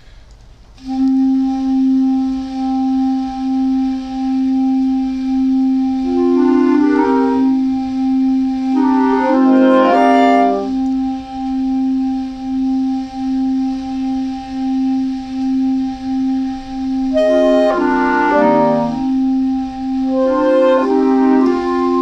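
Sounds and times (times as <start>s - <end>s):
slow clarinet music: 0.8s - 22.0s.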